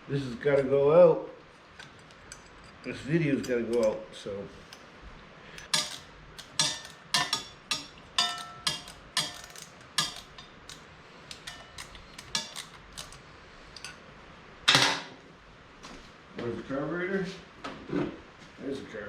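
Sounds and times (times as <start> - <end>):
metal tools clinking: 5.6 - 13.2
loud metal clank: 5.7 - 10.5.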